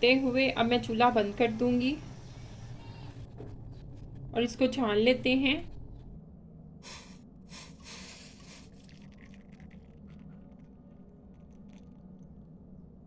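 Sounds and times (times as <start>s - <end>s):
tea pouring into a cup: 8.4s - 12.6s.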